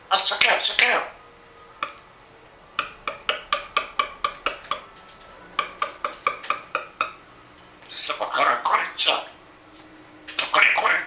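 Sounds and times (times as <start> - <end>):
sharp clinking taps: 1.8 - 2.0, 2.8 - 7.2.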